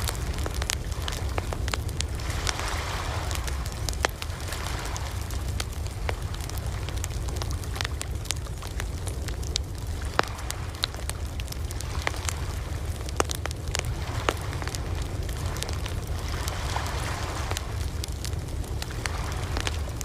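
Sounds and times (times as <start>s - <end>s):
surf: 0.0s - 8.4s
campfire crackling and popping: 0.0s - 20.0s.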